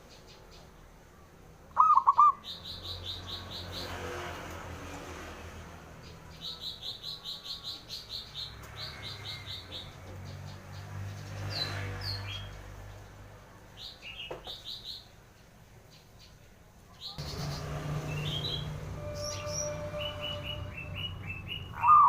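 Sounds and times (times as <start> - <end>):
small bird chirping: 1.8 - 4.0, 13.8 - 22.0.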